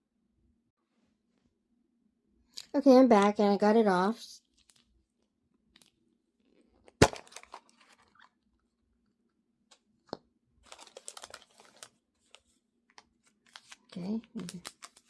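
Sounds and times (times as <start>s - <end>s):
crinkling plastic wrapping: 4.4s - 5.0s, 7.0s - 8.4s, 10.6s - 15.0s.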